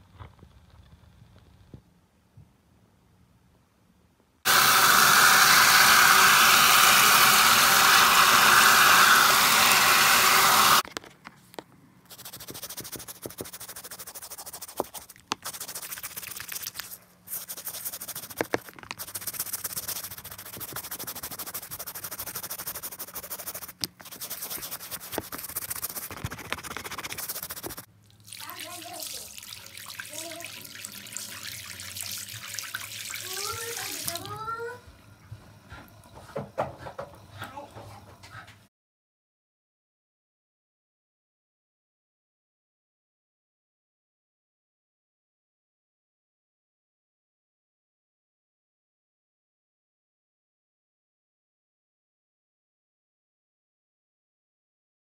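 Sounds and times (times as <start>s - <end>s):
scrubbing on a sneaker: 12.1s - 27.9s.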